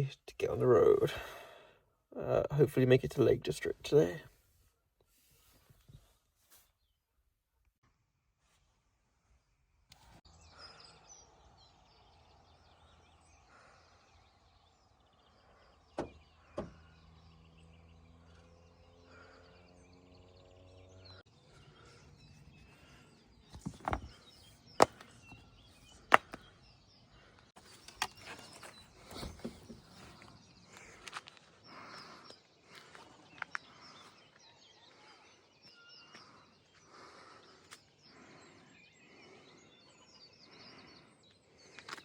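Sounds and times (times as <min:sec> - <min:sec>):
faint birds chirping: 0:00.0 - 0:42.0.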